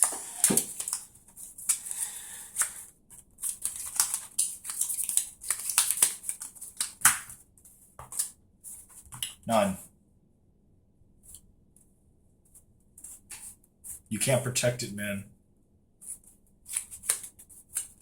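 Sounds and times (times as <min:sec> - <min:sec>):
cards tapping and sliding: 0:00.0 - 0:07.4, 0:08.0 - 0:08.3, 0:16.0 - 0:18.0.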